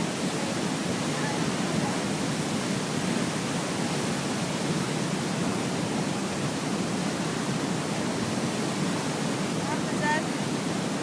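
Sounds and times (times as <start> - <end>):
waterfall rushing: 0.0 - 11.0.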